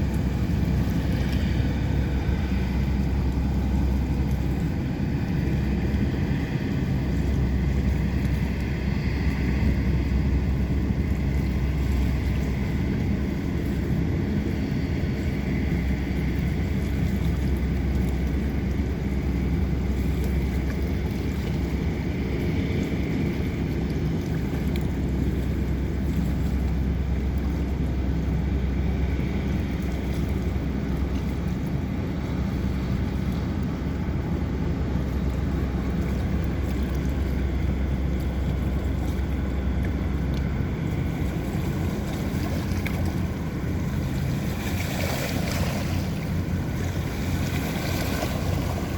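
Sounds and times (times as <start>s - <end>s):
boat engine drone: 0.0s - 48.9s.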